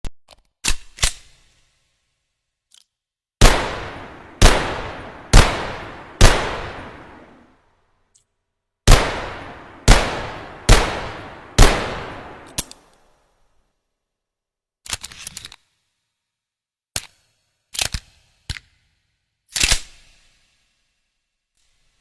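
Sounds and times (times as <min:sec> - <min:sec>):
pistol shots echoing: 0:03.4 - 0:07.4, 0:08.9 - 0:12.7.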